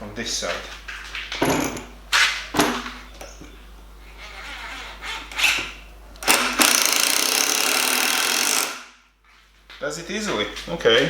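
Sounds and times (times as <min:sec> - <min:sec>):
impact driver hammering: 0:06.2 - 0:09.0.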